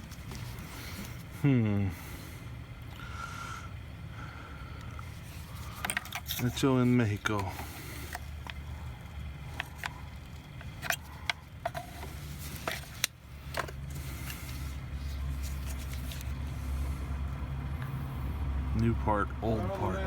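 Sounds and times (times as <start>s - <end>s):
steady low hum: 0.0s - 20.0s
plastic parts clicking and knocking: 5.7s - 6.6s, 9.5s - 14.4s.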